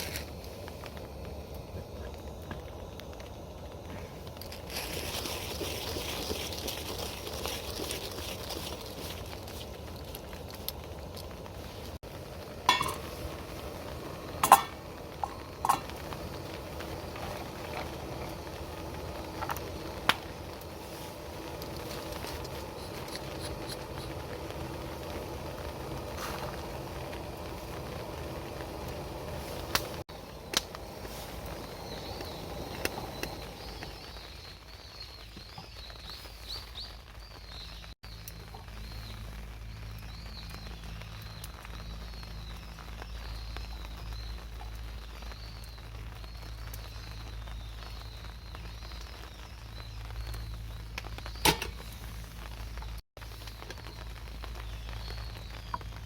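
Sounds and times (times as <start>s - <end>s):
small birds chirping: 13.0s - 56.0s.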